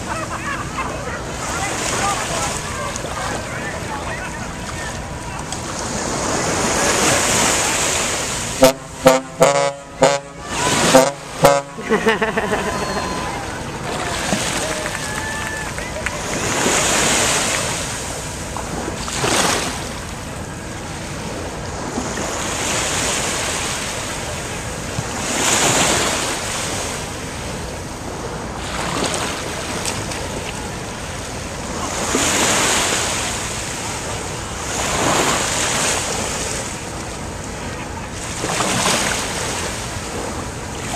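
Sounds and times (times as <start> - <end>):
surf: 0.0 - 40.9
wind: 0.0 - 40.9
yacht horn blasts: 8.5 - 17.6.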